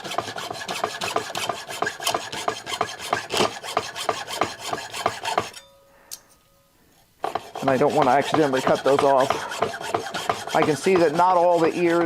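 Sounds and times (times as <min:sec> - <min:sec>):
hand saw rasping strokes: 0:00.0 - 0:05.7, 0:07.2 - 0:12.0.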